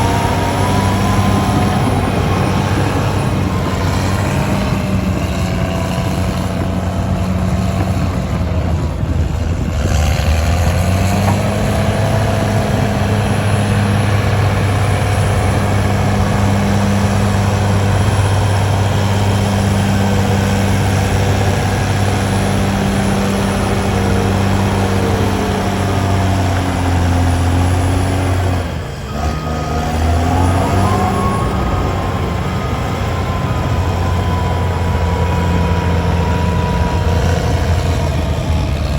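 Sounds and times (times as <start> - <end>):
heavy diesel engine running: 0.0 - 38.9.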